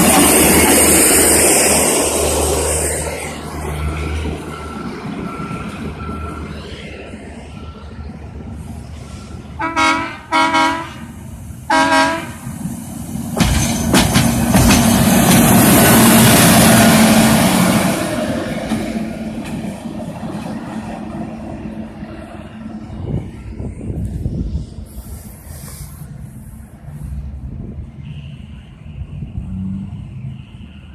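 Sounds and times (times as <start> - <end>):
rail equipment passing on track: 0.0 - 30.9
rail vehicle horn blasts: 9.6 - 12.5.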